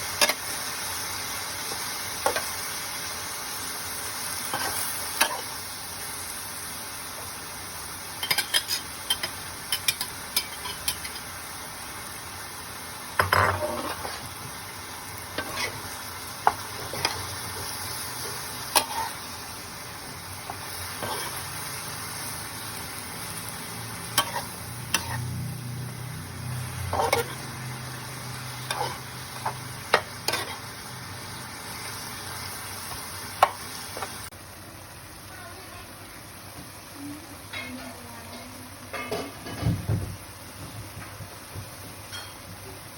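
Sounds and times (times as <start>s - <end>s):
food sizzling in a pan: 0.0s - 42.9s
metal utensil scraping a pan: 13.2s - 14.3s, 15.3s - 19.2s, 20.9s - 21.6s, 24.0s - 25.5s, 26.4s - 27.7s, 28.5s - 30.8s.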